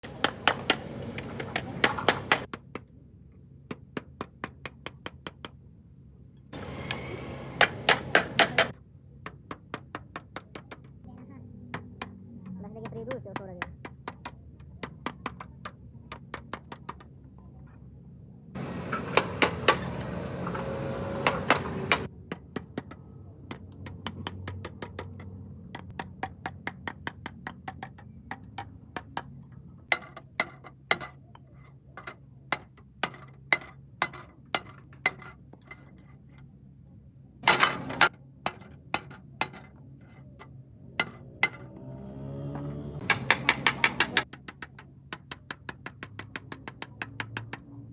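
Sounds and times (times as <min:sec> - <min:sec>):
hammer striking metal: 0:00.0 - 0:02.5, 0:06.6 - 0:08.7, 0:18.6 - 0:22.1, 0:37.4 - 0:39.7, 0:41.0 - 0:41.8, 0:43.0 - 0:44.7.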